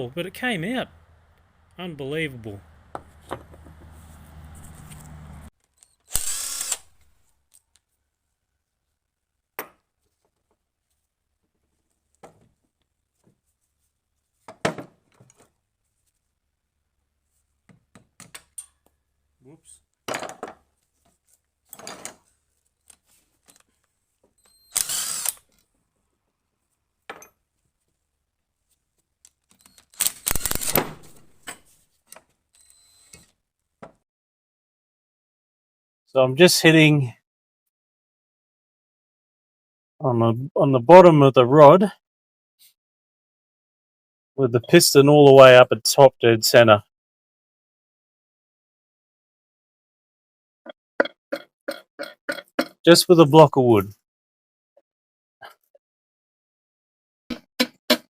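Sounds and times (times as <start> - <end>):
handheld power tool running: 6.1 - 6.9, 24.7 - 25.5
handheld power tool burst: 6.1 - 7.0, 24.7 - 25.5, 29.9 - 31.4
tools and parts clanking: 21.7 - 23.7, 30.7 - 33.3.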